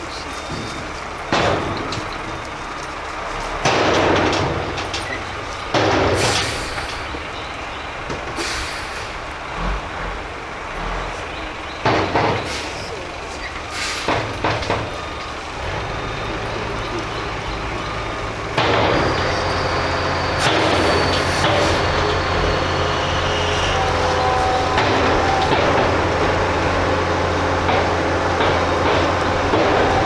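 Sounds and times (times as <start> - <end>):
heavy construction machinery engine: 0.0 - 30.0
loud sudden noisy bursts: 18.5 - 26.6.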